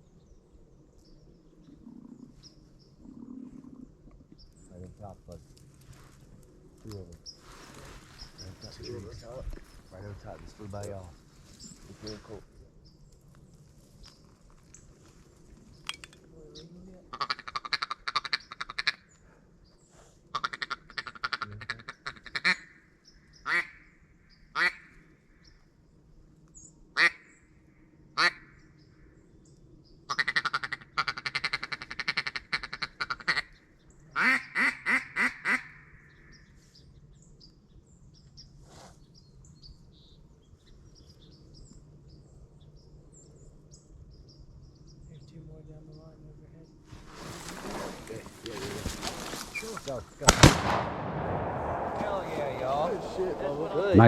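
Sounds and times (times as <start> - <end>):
duck call quacking: 20.4 - 22.6, 30.1 - 33.5, 34.2 - 35.8.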